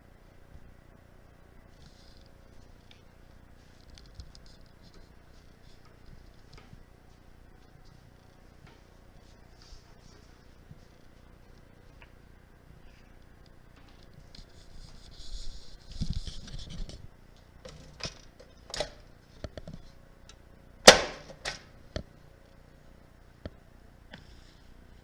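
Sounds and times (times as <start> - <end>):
rustling sliding sound: 8.7 - 11.3, 14.0 - 17.0.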